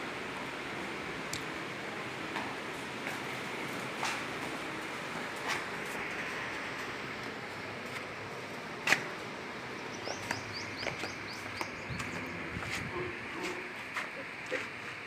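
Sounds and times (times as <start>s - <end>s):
steady background noise: 0.0s - 15.0s
small bird chirping: 9.8s - 12.5s.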